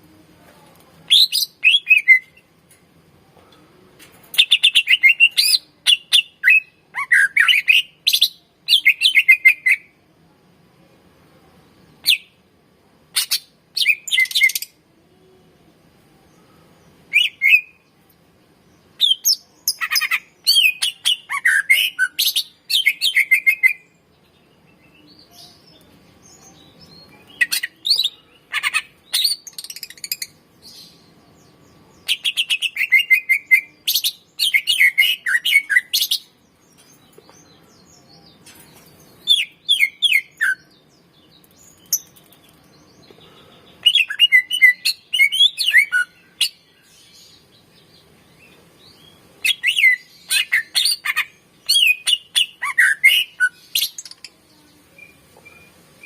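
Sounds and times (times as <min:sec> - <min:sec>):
bird singing: 0:01.1 - 0:02.5, 0:16.2 - 0:56.0.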